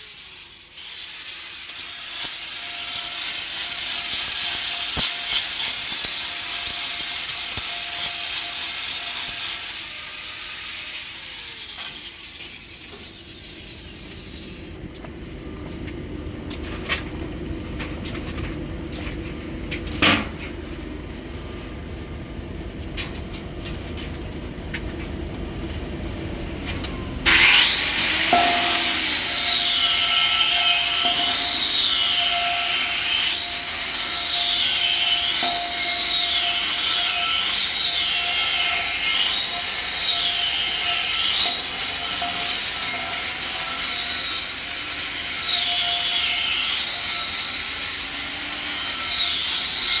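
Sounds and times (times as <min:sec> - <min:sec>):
angle grinder grinding steel: 0:00.7 - 0:14.8, 0:26.6 - 0:50.0.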